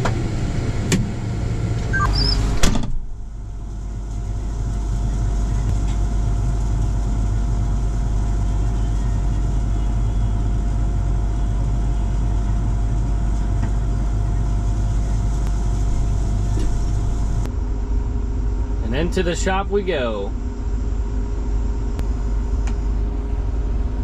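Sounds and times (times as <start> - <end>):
diesel engine running: 0.0 - 24.0
steady whine: 0.0 - 24.0.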